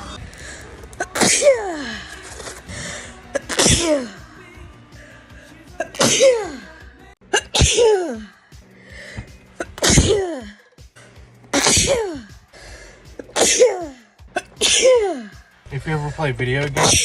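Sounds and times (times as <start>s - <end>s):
person sneezing: 3.3s - 4.2s, 5.8s - 6.6s, 7.3s - 8.3s, 9.6s - 10.6s, 11.5s - 12.4s, 13.2s - 15.4s, 16.8s - 17.0s.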